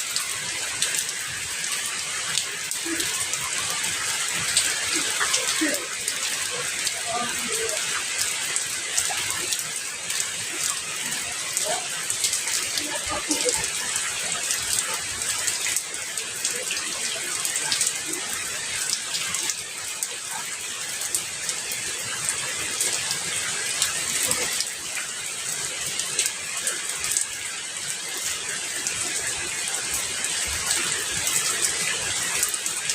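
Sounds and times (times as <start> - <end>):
steady rain: 0.0 - 32.9.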